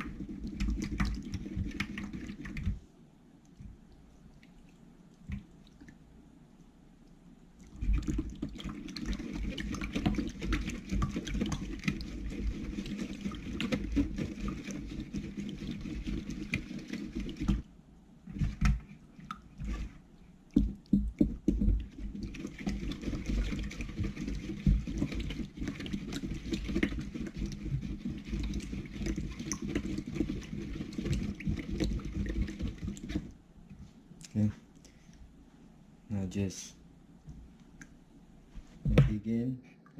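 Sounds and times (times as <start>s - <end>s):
slime squelching and scraping: 7.6s - 17.7s, 18.3s - 20.8s, 21.4s - 33.4s.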